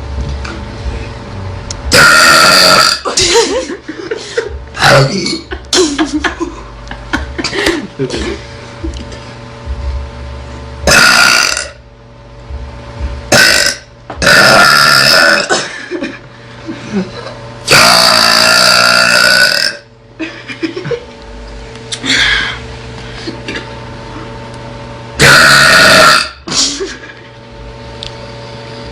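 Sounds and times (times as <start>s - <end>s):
girl burping loudly: 1.9s - 3.2s, 10.9s - 11.8s, 13.3s - 15.7s, 17.7s - 19.9s, 25.2s - 26.4s.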